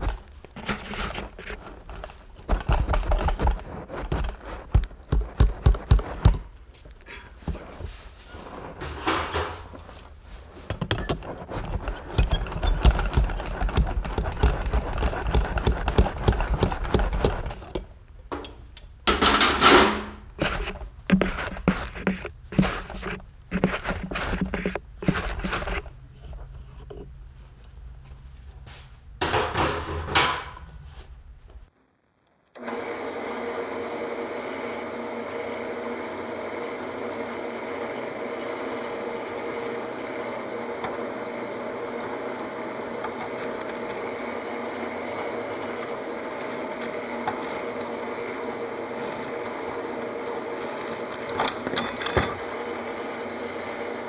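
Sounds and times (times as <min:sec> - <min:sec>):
tools knocking and scraping on metal: 0:08.8 - 0:27.2, 0:29.2 - 0:31.6, 0:50.6 - 0:52.4.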